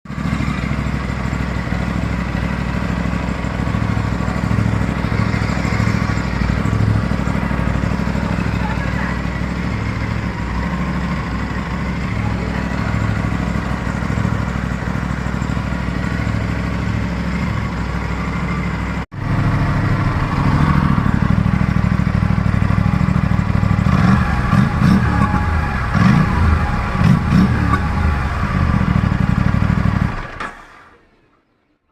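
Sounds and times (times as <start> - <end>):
motorcycle engine idling and revving: 0.1 - 31.0.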